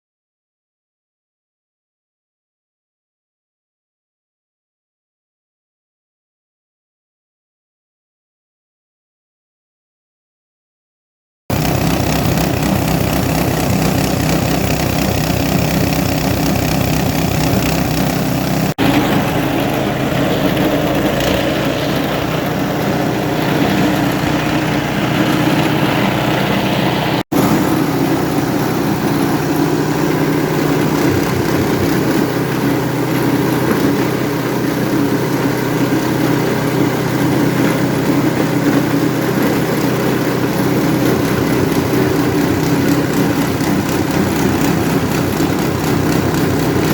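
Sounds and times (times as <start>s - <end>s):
shredding machine drone: 11.5s - 46.9s.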